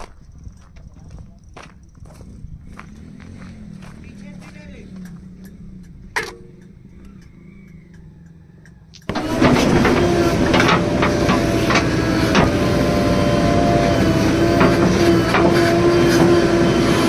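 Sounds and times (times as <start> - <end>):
faint low engine hum: 0.3 - 17.0
diesel machine noise: 2.1 - 17.0
steady whine: 4.9 - 17.0
metallic knocks: 5.0 - 17.0.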